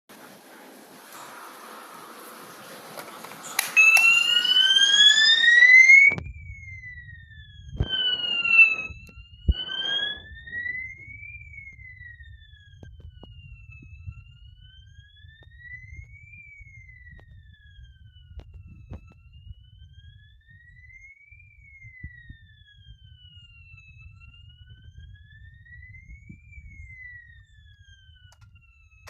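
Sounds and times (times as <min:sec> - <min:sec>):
fire alarm siren wailing: 0:01.1 - 0:29.0
loud bursts of noise: 0:07.8 - 0:11.2.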